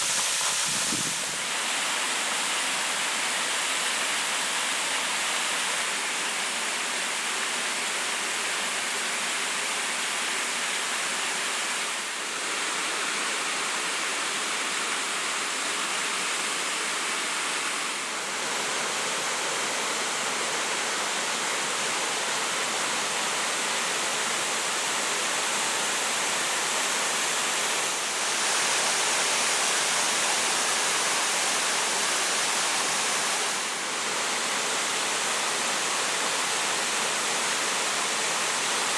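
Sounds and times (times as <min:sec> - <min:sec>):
waterfall rushing: 0:00.0 - 0:02.1, 0:24.4 - 0:38.9.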